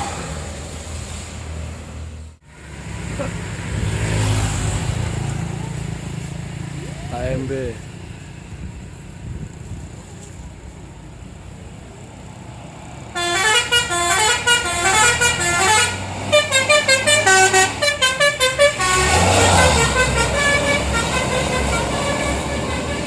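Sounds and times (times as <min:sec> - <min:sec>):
bus engine: 0:00.0 - 0:23.0
musical bus horn: 0:13.2 - 0:23.0.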